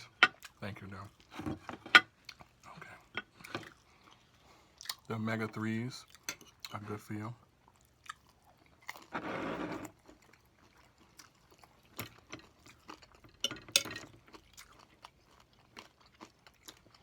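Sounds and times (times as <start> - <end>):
person chewing food: 2.0 - 5.1, 6.0 - 6.8, 7.6 - 17.0.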